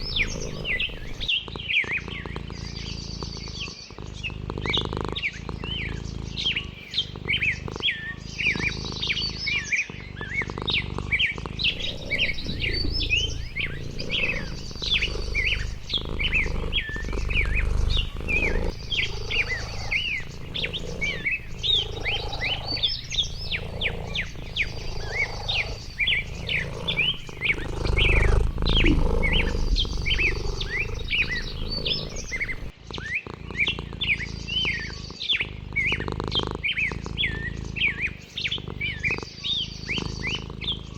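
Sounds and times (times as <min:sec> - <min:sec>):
high bird trill: 0:00.0 - 0:01.3, 0:05.7 - 0:36.1
songbirds chirping: 0:00.0 - 0:40.9.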